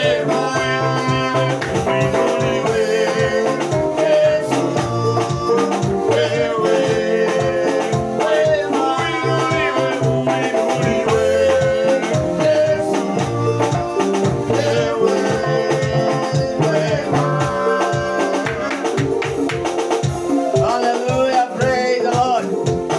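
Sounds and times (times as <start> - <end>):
upbeat music with singing: 0.0 - 22.9.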